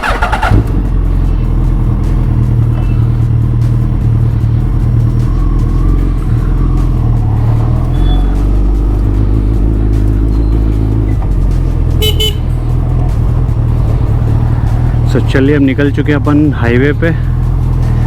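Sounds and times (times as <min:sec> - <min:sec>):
motorcycle engine running: 0:00.0 - 0:18.0
horn toots: 0:07.8 - 0:08.6, 0:11.8 - 0:13.2.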